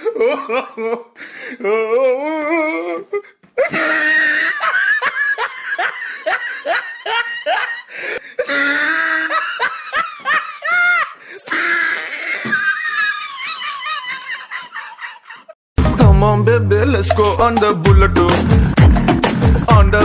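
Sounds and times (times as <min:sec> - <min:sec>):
person laughing: 0:00.0 - 0:01.8, 0:03.6 - 0:11.2, 0:12.0 - 0:15.6.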